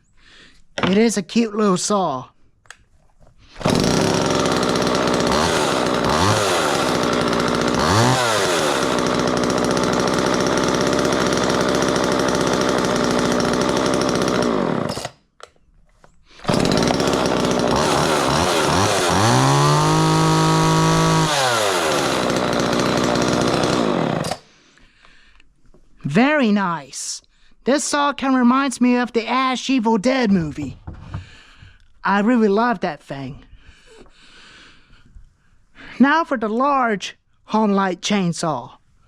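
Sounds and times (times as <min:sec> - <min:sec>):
small chainsaw engine: 0:03.6 - 0:15.2, 0:16.4 - 0:24.5.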